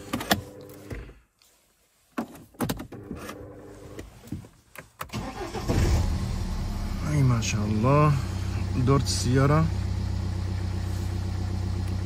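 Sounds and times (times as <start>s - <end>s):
diesel engine cranking and running: 5.1s - 12.0s.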